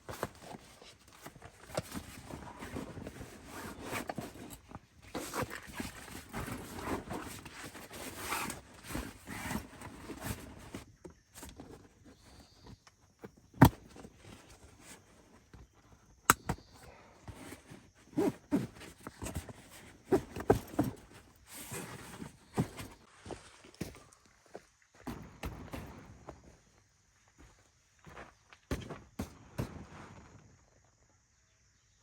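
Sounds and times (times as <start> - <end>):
rustling handling noises: 0.0 - 24.6.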